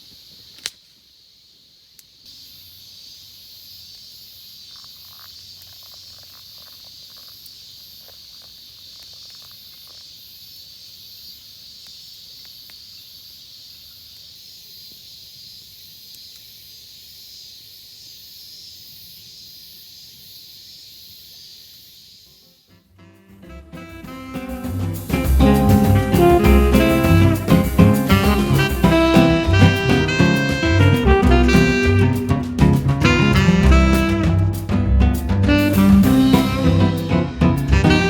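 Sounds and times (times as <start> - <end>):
insects chirping: 0.0 - 38.0
even pulsing rhythm: 23.5 - 38.0.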